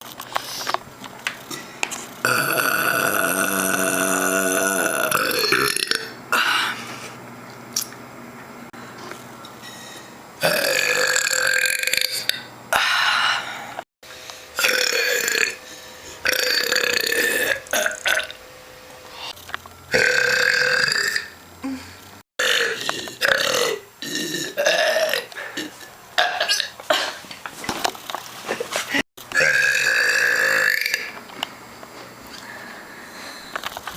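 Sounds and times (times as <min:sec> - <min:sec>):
woman burping: 0:02.2 - 0:06.7, 0:10.4 - 0:12.4, 0:14.6 - 0:15.6, 0:19.9 - 0:27.2, 0:29.3 - 0:31.2.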